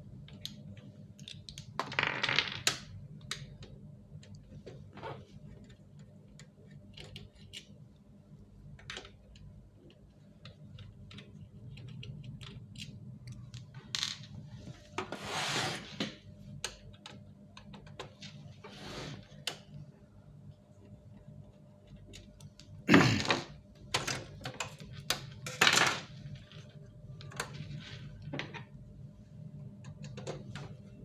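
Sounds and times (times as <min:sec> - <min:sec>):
plastic parts clicking and tapping: 0:08.7 - 0:14.3.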